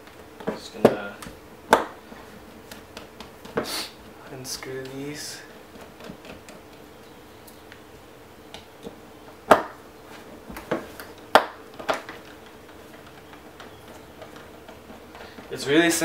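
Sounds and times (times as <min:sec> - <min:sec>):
plastic parts handled: 0:10.2 - 0:16.0.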